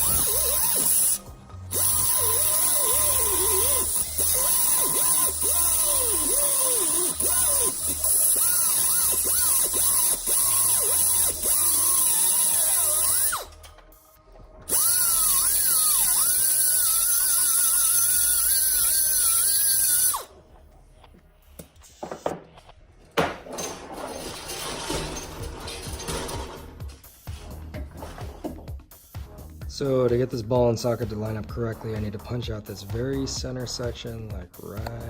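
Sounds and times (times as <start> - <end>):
electric power tool whining: 0.0 - 13.7, 14.6 - 20.3.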